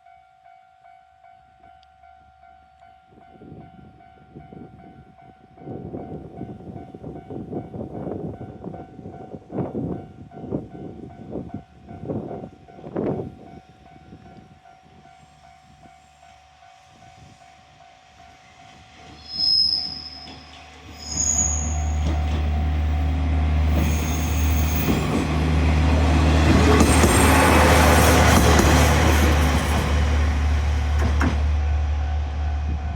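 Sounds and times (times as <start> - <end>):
diesel railcar engine drone: 16.8 - 32.9
high squeals: 19.1 - 22.4.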